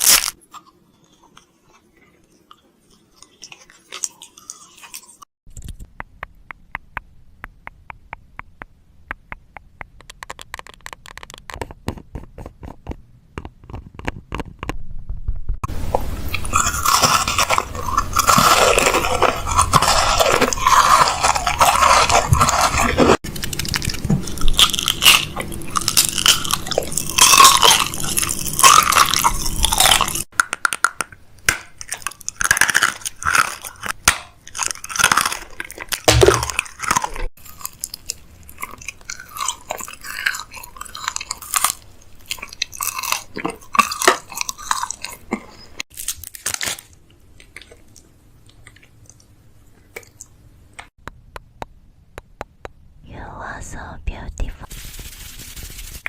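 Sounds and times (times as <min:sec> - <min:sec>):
packaging crunching and crinkling: 0:00.0 - 0:00.4, 0:16.4 - 0:30.8, 0:31.5 - 0:47.8
quick taps and clicks: 0:05.5 - 0:14.8.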